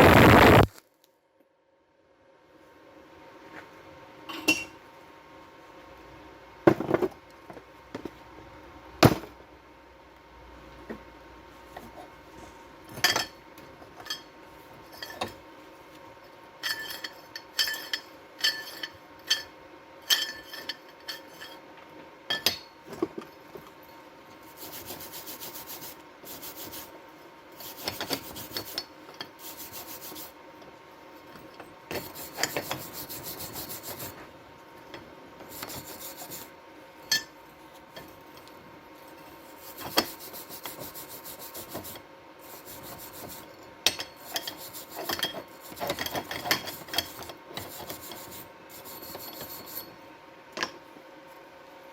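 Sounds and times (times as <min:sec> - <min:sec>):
rasping scraping on metal: 0:31.9 - 0:34.2, 0:35.5 - 0:36.5, 0:39.4 - 0:50.0.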